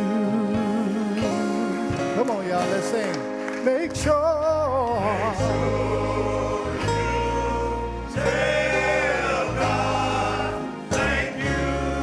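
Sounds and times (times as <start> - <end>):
instrumental accompaniment with bass: 0.0 - 12.0
choir singing: 4.9 - 12.0.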